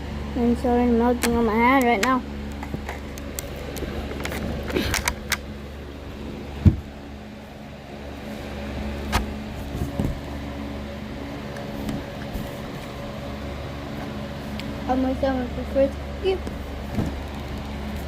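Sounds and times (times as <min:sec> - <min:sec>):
steady low hum: 0:00.0 - 0:18.0
strong thump: 0:06.6 - 0:06.9.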